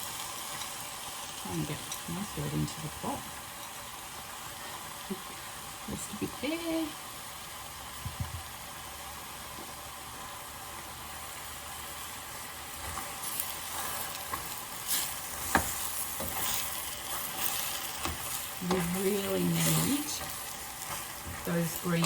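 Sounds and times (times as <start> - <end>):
food sizzling in a pot: 0.0 - 22.0
utensil scraping a pot: 12.8 - 22.0.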